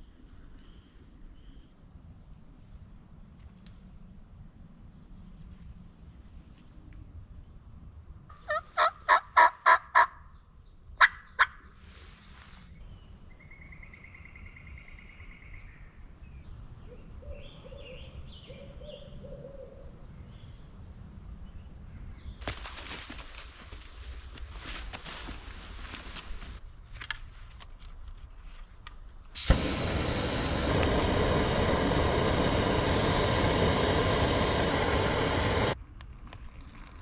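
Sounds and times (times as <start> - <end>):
songbird trill and chirps: 0.0 - 1.8, 9.9 - 20.8
wild turkey calling: 8.3 - 10.2
rustling: 22.4 - 28.9.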